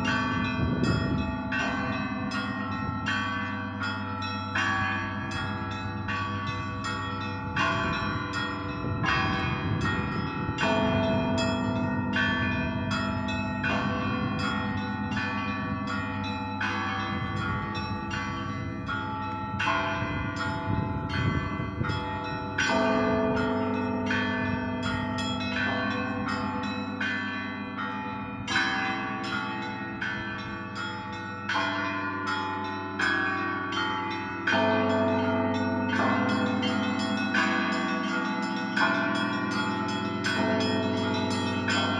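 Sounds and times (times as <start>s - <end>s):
deep hum of large bell: 0.0s - 41.9s.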